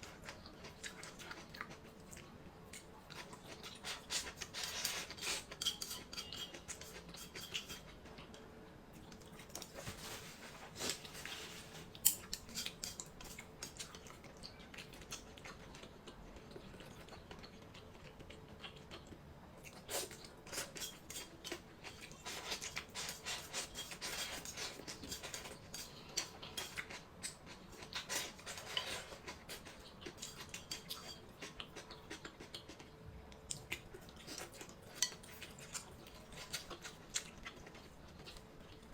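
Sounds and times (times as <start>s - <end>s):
chewing: 0.0s - 9.9s, 10.8s - 38.9s
utensils scraping against dishes: 4.6s - 7.9s.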